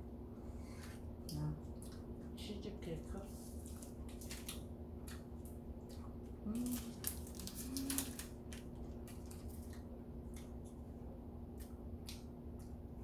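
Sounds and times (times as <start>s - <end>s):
steady low hum: 0.0s - 13.0s
soft chewing: 0.4s - 2.4s, 3.0s - 13.0s
person humming mm: 6.4s - 8.2s.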